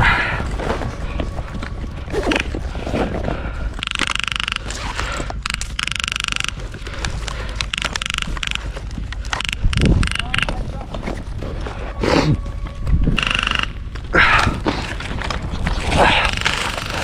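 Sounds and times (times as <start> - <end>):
rustling: 0.0 - 17.0
airsoft gun rapid-fire bursts: 3.8 - 6.6, 7.6 - 10.5, 13.2 - 13.7.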